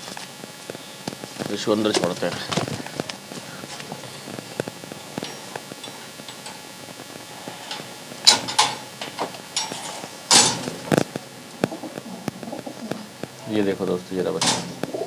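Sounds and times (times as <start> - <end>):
cage rattling clatter: 7.7 - 11.0, 14.4 - 14.8
clicks and knocks from a cage: 8.3 - 10.8, 14.4 - 14.8.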